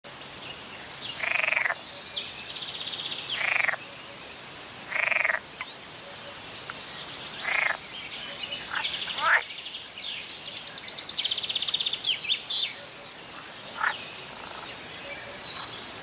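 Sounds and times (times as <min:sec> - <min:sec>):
frogs croaking: 0:01.1 - 0:16.0
frog trilling call: 0:01.2 - 0:01.8, 0:03.4 - 0:03.8, 0:04.9 - 0:05.4, 0:07.4 - 0:07.8, 0:08.4 - 0:09.5.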